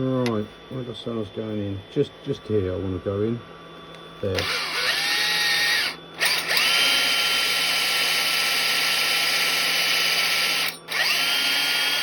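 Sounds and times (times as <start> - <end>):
electric drill whining: 4.4 - 12.0.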